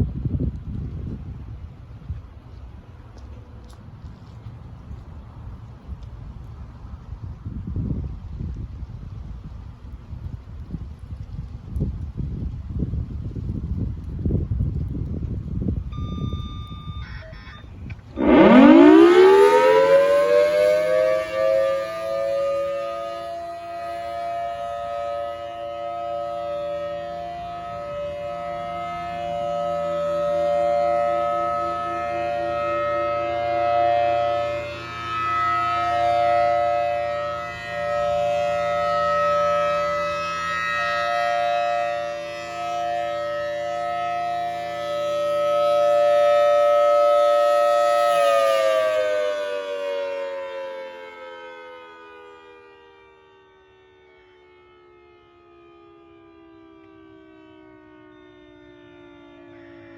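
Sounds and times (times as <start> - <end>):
warning siren wailing: 1.2 - 6.0, 15.6 - 59.9.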